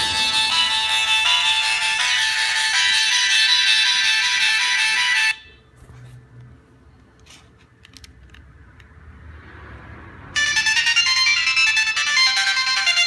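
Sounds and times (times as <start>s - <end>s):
phone ringtone melody: 0.0s - 5.6s, 10.4s - 13.0s.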